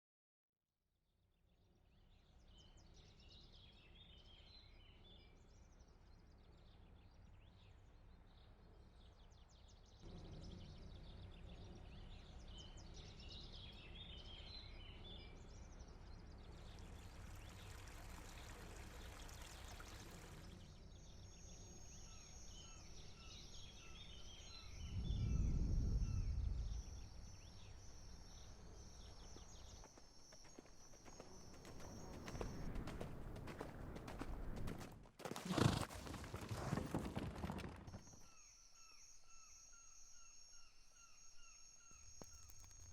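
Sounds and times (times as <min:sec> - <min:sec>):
faint outdoor hiss: 0:02.4 - 0:32.8
birds chirping: 0:02.4 - 0:42.9
low rumble: 0:24.5 - 0:28.8.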